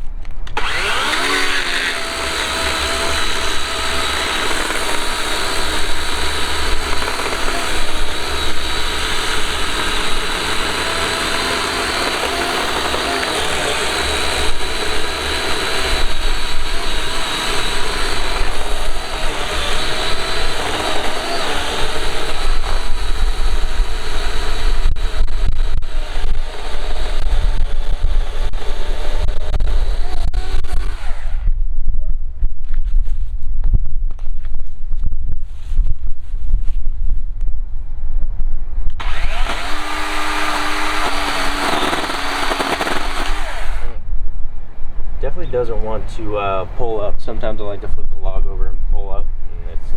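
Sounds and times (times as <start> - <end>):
chainsaw cutting a log: 0.4 - 31.5, 39.0 - 44.0.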